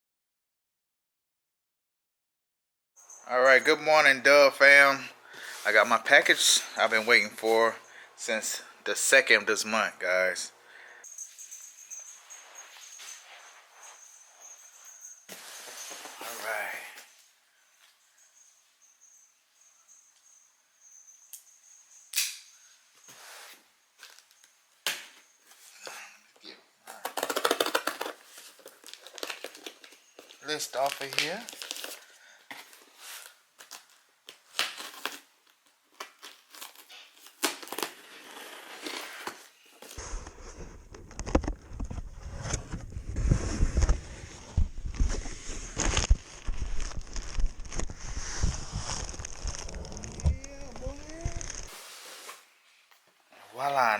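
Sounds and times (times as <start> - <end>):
package rustling: 27.0 - 40.0, 43.7 - 52.4.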